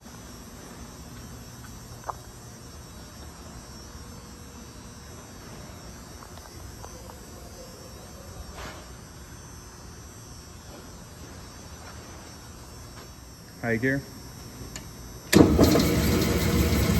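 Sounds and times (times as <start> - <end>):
faint high whine: 0.0 - 16.9
steady low hum: 0.0 - 16.9.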